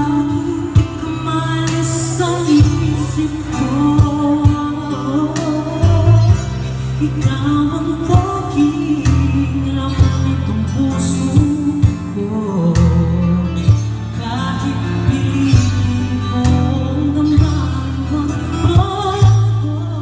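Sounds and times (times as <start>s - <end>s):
music with singing: 0.0s - 20.0s
steady bass line: 0.0s - 20.0s.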